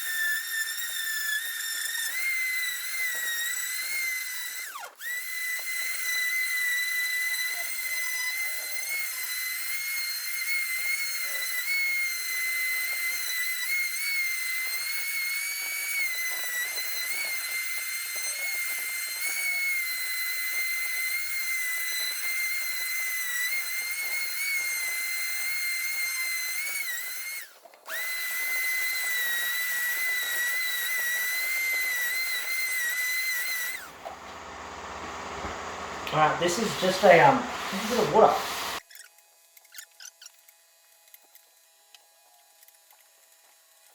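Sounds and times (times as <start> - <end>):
electric sander whining: 33.3 - 38.8.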